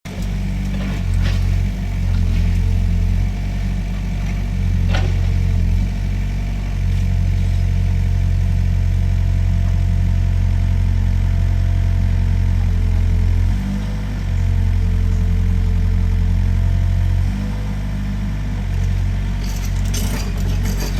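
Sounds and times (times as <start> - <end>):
excavator engine running: 0.1 - 20.9.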